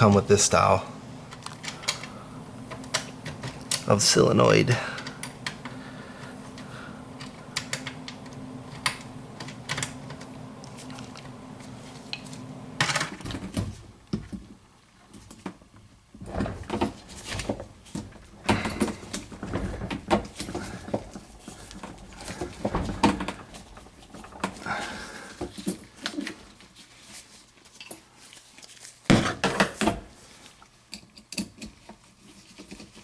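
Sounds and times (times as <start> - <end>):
low steady hum: 16.2 - 26.6.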